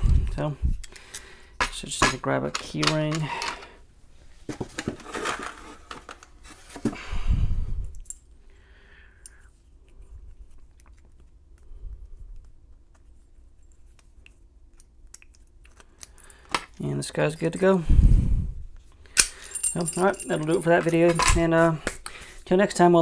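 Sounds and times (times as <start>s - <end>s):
keys rattling and clinking: 19.2s - 21.8s.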